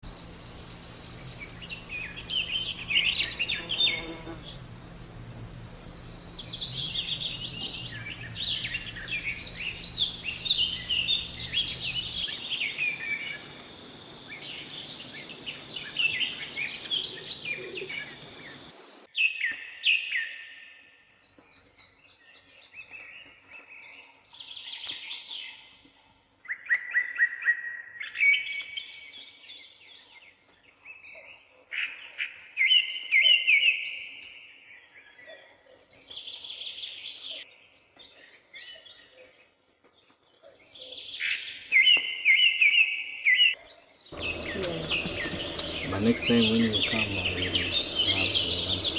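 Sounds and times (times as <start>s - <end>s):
birds chirping and singing: 0.1s - 4.2s, 5.4s - 18.8s, 44.2s - 48.9s.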